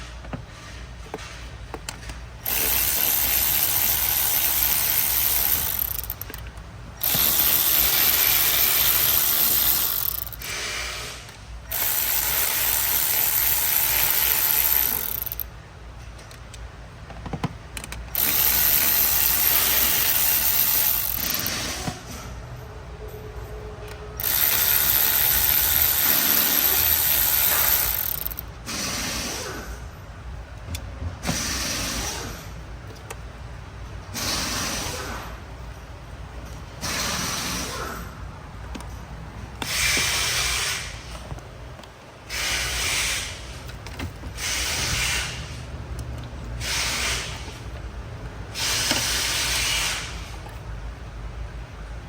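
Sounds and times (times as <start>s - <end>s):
ratchet wrench clicking: 1.8s - 10.8s, 11.7s - 15.5s, 17.8s - 21.9s, 24.2s - 28.5s, 48.5s - 50.3s.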